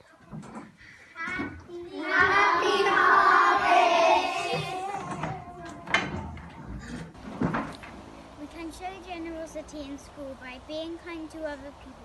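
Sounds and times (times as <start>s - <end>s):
children's voices: 0.9s - 6.2s, 8.4s - 12.0s.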